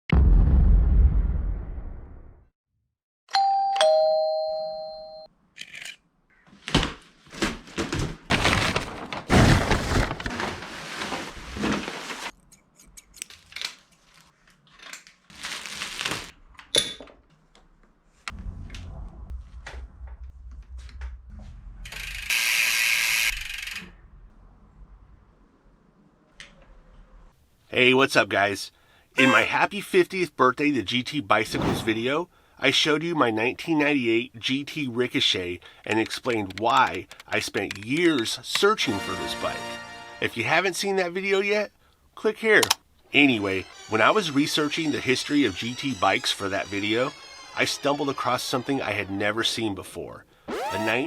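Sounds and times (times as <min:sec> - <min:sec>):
two-tone doorbell chime: 0:03.3 - 0:05.3
knocks scrapes and rustling: 0:07.3 - 0:12.4.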